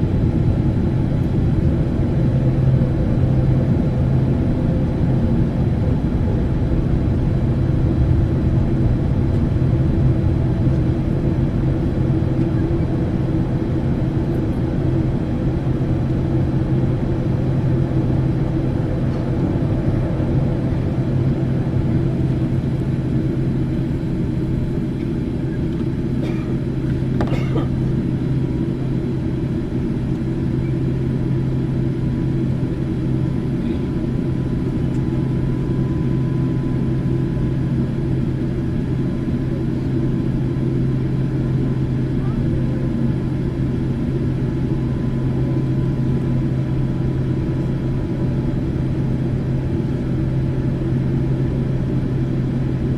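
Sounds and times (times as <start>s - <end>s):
jet engines humming: 0.0s - 52.9s.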